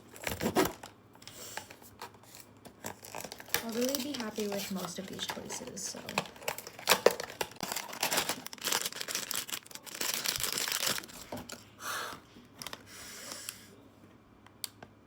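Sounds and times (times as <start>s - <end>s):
packaging tearing and crinkling: 0.2s - 0.9s, 1.6s - 11.6s.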